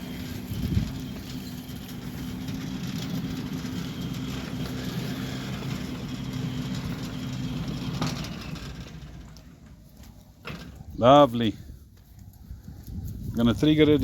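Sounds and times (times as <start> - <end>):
sliding gate motor humming: 0.0 - 9.8.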